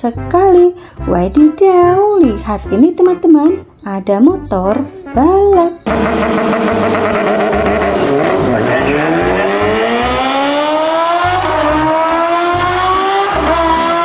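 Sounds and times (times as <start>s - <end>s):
motorbike engine revving: 5.4s - 14.0s.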